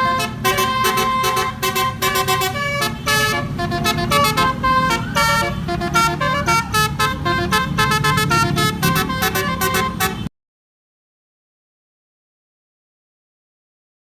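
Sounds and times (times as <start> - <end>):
low engine rumble: 0.0 - 10.3
musical vehicle horn tooting: 0.0 - 10.3.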